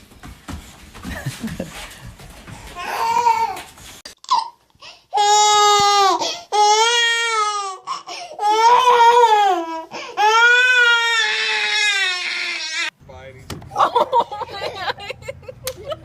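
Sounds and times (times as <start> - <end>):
baby crying: 2.8 - 12.9.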